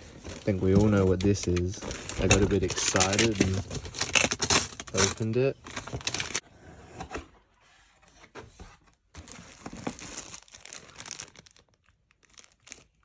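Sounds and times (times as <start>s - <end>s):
packaging crinkling and rustling: 0.0s - 6.4s, 9.2s - 13.0s.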